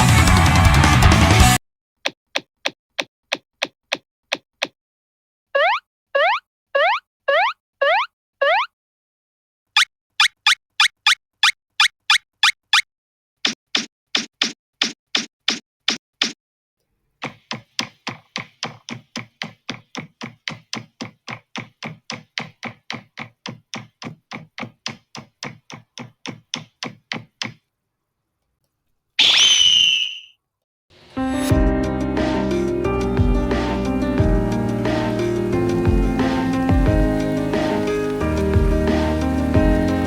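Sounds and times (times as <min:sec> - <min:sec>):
sharp knocking taps: 0:17.2 - 0:27.6.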